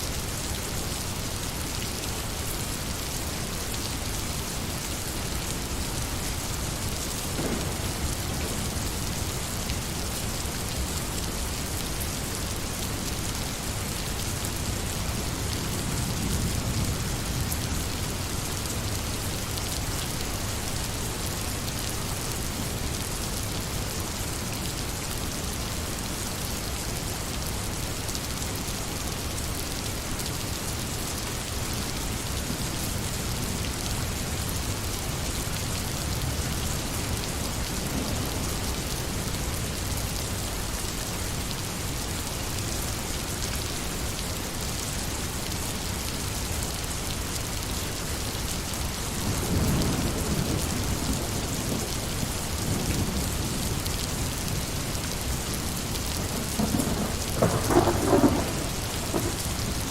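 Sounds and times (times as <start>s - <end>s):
heavy rain falling: 0.0s - 59.9s
thunder rumbling: 7.0s - 9.8s, 55.6s - 59.9s.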